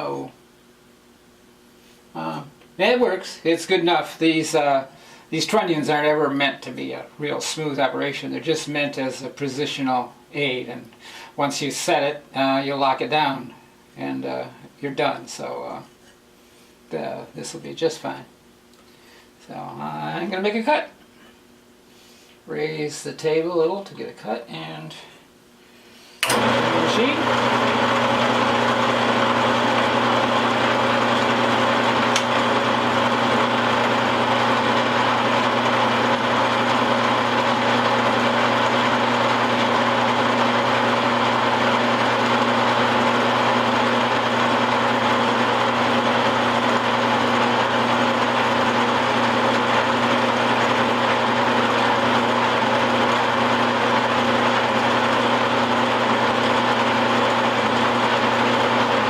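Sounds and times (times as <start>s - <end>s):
milling machine motor hum: 26.2s - 59.0s.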